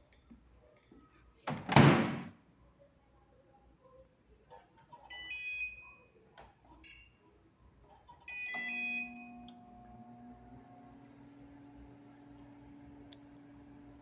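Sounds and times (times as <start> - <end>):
microwave keypad beeping: 8.3 - 9.6
microwave oven humming: 8.6 - 14.0.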